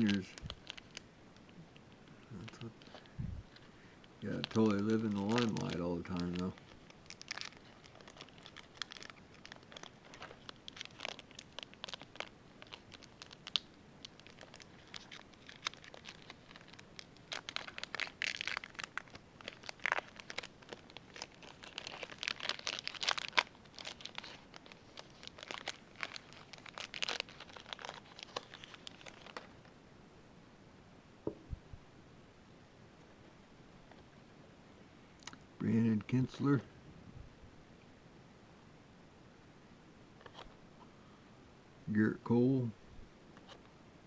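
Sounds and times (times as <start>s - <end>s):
plastic wrapper crinkling and tearing: 0.0s - 29.7s, 40.2s - 40.6s.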